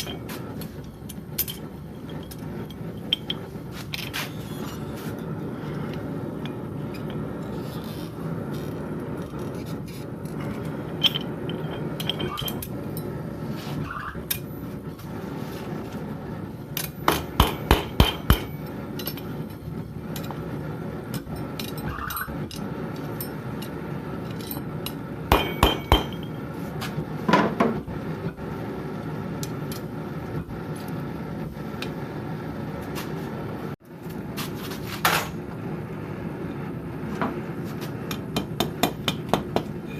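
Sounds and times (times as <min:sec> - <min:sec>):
hammer striking steel on anvil: 0:16.8 - 0:19.2, 0:24.5 - 0:26.4, 0:38.1 - 0:39.9.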